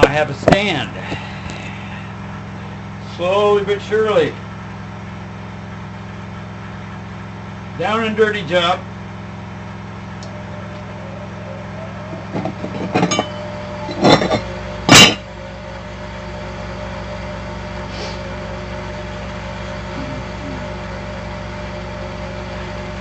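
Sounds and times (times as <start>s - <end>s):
low mechanical hum: 0.0s - 23.0s
sharp metal clanks: 12.1s - 15.3s.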